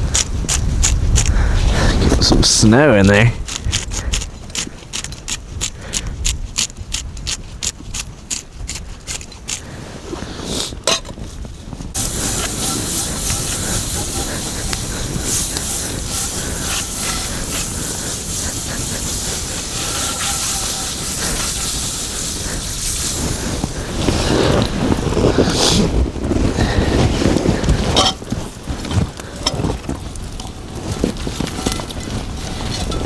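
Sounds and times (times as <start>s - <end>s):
wind buffeting microphone: 0.0s - 33.0s
steady hiss: 12.0s - 26.0s.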